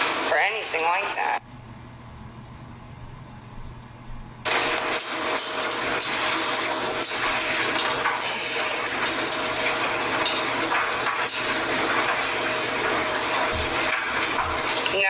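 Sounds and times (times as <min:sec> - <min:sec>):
loud rushing hiss: 0:04.5 - 0:10.8.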